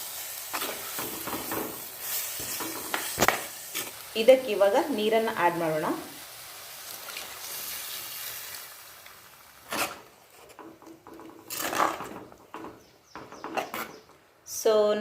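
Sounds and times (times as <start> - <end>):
water hissing in hot pan: 0.0 - 10.3.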